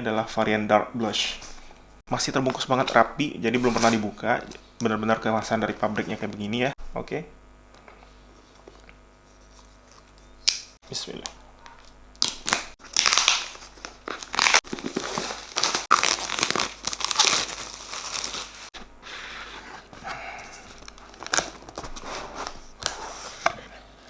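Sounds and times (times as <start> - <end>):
packaging wrap tearing and crinkling: 10.5 - 18.8, 20.5 - 23.4.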